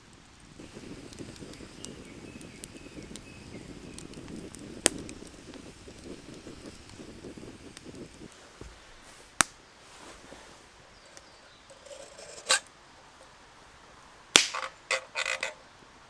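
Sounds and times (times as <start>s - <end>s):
sharp wooden cracks: 14.4s - 15.6s.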